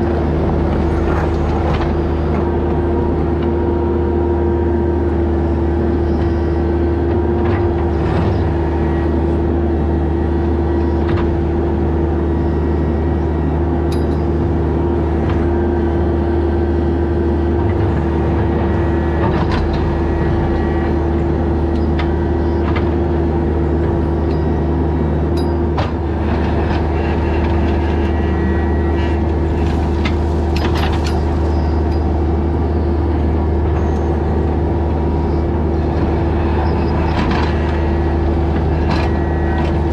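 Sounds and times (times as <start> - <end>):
excavator diesel engine running: 0.0 - 39.9
machine clanks and knocks: 29.0 - 32.1.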